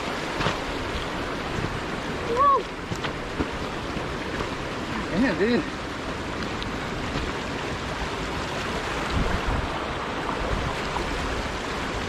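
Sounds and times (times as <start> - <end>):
creek water flowing: 0.0 - 12.0.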